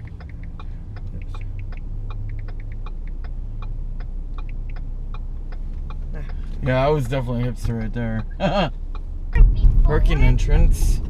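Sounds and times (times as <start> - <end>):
light irregular ticks: 0.0 - 9.1
car engine and road rumble: 0.0 - 11.0.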